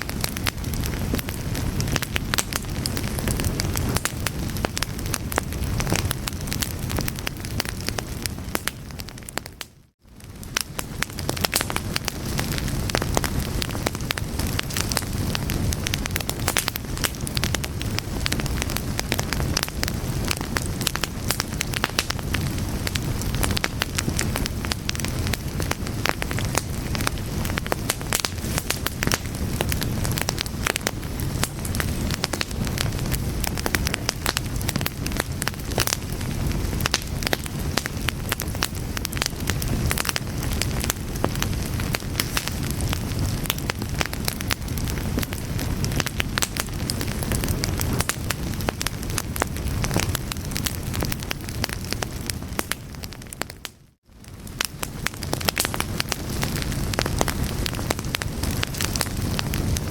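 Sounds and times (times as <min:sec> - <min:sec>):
fire crackling and popping: 0:00.0 - 0:59.9
low fire rumble: 0:00.0 - 0:59.9.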